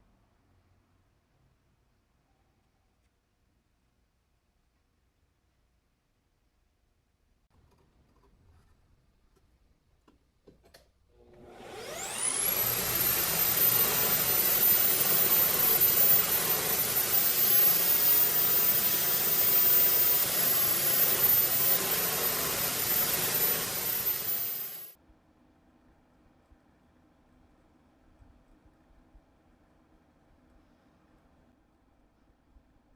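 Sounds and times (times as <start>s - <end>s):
power tool motor whining: 11.3s - 24.9s.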